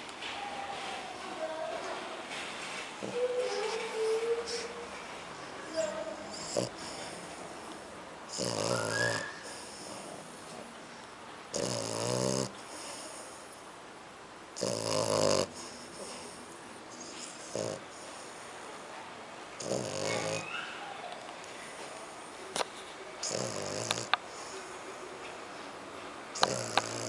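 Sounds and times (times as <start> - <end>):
dog snoring: 5.7 - 10.3, 11.5 - 13.4, 14.6 - 18.3, 19.6 - 20.5, 23.2 - 24.7, 26.4 - 27.0.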